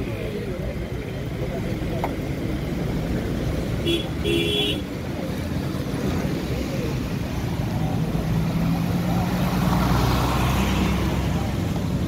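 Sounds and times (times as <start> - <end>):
busy road traffic noise: 0.0 - 12.0
vehicle engine humming: 0.0 - 12.0.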